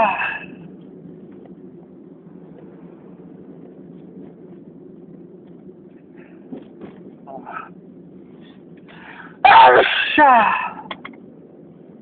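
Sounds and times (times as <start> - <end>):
steady low background hum: 0.0 - 12.0.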